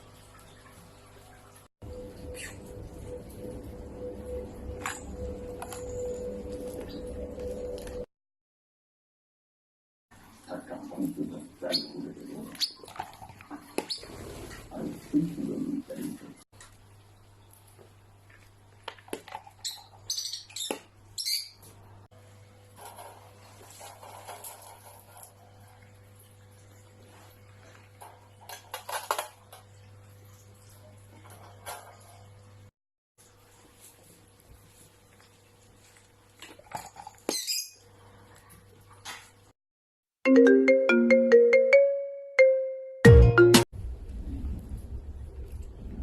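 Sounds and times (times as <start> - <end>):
low hum: 1.8 - 8.0
parrot chirping: 19.6 - 21.6.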